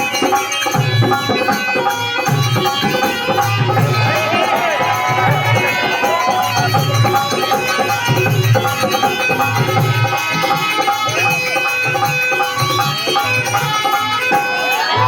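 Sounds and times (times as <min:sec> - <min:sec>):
hand drum beat: 0:00.7 - 0:15.0
held melodic tones: 0:01.4 - 0:15.0.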